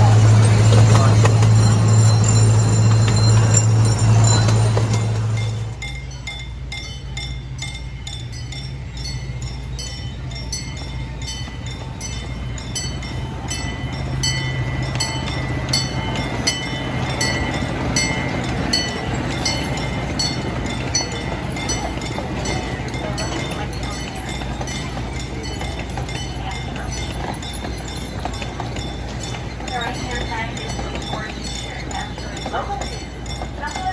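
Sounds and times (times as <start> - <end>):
miniature train engine humming: 0.0 - 33.9
train clinking: 0.0 - 33.9.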